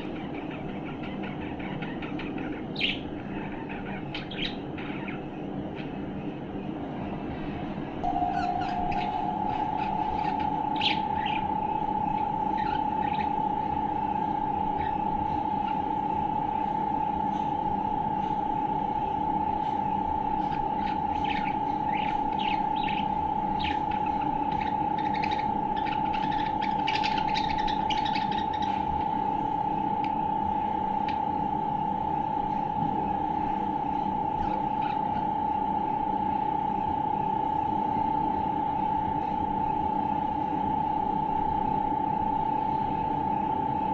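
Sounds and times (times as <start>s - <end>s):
budgerigar chirping and twittering: 0.0s - 6.0s, 8.1s - 14.2s, 20.4s - 29.1s, 34.4s - 35.3s
steady high-pitched hum: 0.0s - 43.9s.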